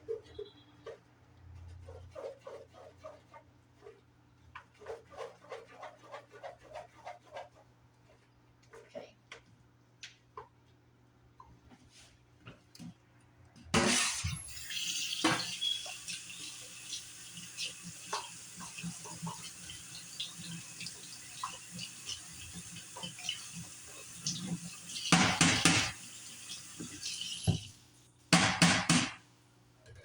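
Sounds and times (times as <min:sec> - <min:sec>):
tap water running into sink: 0:14.2 - 0:27.8.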